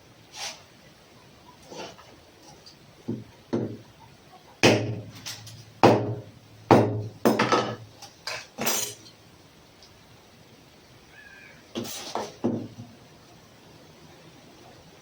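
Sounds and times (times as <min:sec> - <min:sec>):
sharp ringing knocks: 0:04.6 - 0:07.8.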